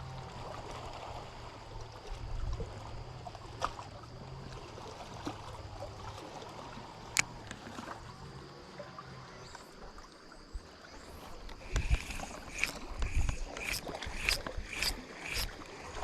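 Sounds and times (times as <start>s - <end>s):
seawater lapping: 0.0s - 16.0s
low hum: 10.9s - 16.0s
sharp clicks: 11.4s - 15.6s.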